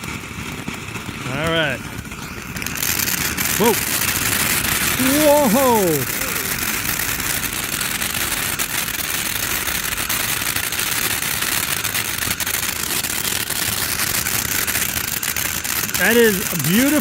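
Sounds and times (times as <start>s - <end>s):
firework fountain hissing and crackling: 0.0s - 17.0s.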